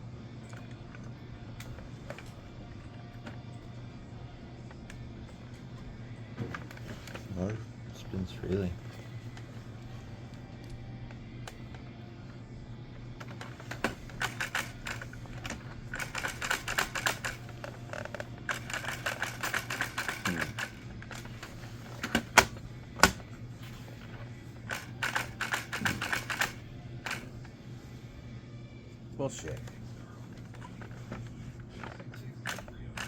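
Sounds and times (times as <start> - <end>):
steady low hum: 0.0 - 33.0
plastic parts clicking and rattling: 13.2 - 23.3, 24.7 - 27.3, 30.4 - 33.0.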